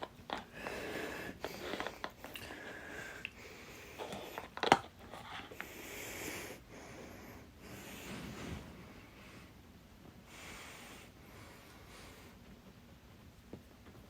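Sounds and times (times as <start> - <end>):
soft breathing: 0.3 - 9.6, 10.2 - 12.6.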